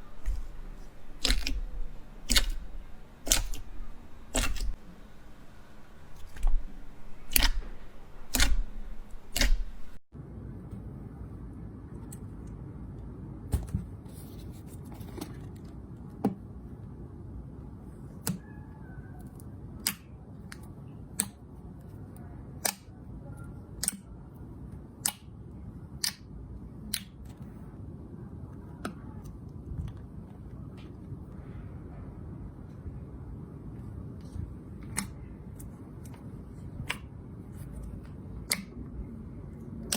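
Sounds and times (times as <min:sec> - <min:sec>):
slime clicking pops: 0:00.0 - 0:10.0.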